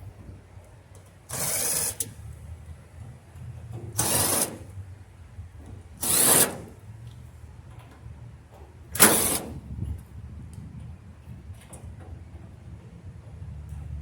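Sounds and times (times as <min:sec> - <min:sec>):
power screwdriver running: 0:01.3 - 0:02.1, 0:04.0 - 0:04.6, 0:06.0 - 0:06.6.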